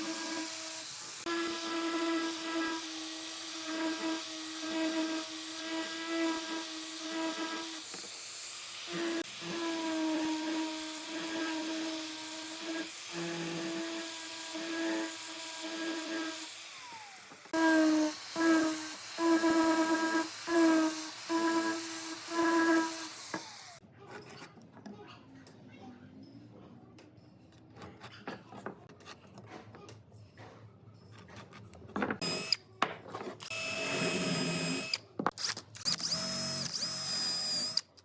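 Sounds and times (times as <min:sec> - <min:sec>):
power tool motor humming: 0:00.0 - 0:23.8, 0:32.2 - 0:32.6, 0:33.4 - 0:37.9.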